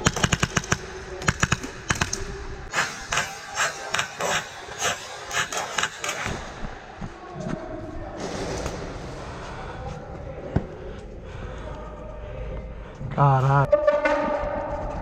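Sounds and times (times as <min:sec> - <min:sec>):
airsoft guns firing: 0:00.0 - 0:06.8.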